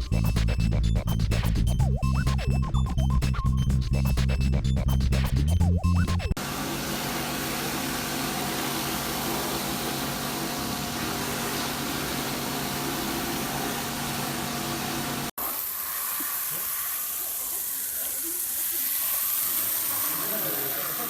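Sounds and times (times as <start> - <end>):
pressure washer machine hum: 6.4 - 21.0
water jet spraying: 6.4 - 21.0.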